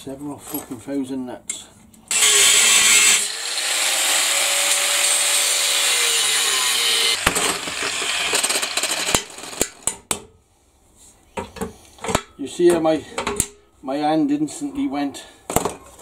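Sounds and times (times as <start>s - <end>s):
angle grinder grinding steel: 2.1s - 9.9s.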